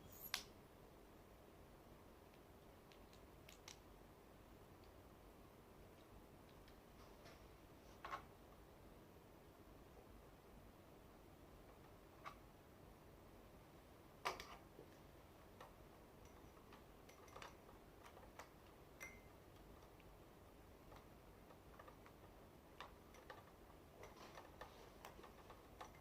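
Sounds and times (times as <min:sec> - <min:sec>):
clicks and taps of handled parts: 0:02.3 - 0:03.8.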